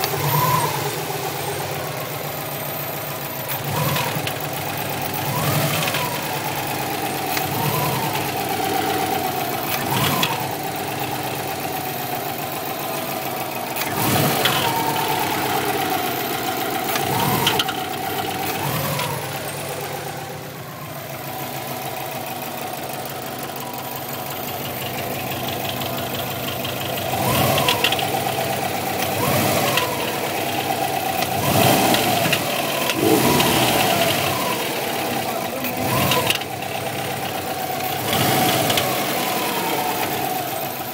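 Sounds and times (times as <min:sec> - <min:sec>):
car engine idling with throttle blips: 0:00.0 - 0:40.9
engine knocking: 0:00.0 - 0:40.9.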